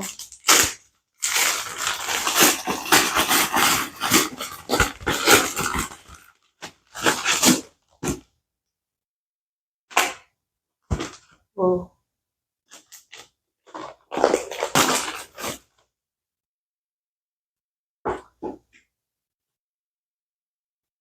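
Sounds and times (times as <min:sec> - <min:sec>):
packaging rustling: 0:00.0 - 0:07.6, 0:12.8 - 0:15.6
plastic package ripping and crinkling: 0:00.0 - 0:07.6, 0:12.8 - 0:15.6.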